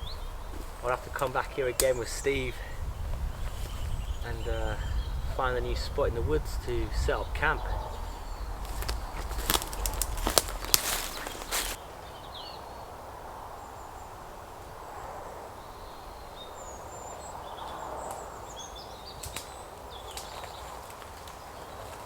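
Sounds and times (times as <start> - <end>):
faint twig clicks: 8.0 - 11.8, 19.1 - 22.0
footsteps crunching through leaves: 8.1 - 11.8.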